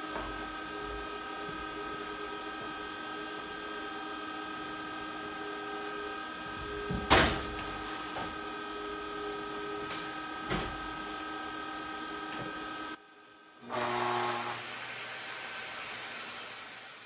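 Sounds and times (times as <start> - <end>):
power tool motor whine: 13.6 - 17.0.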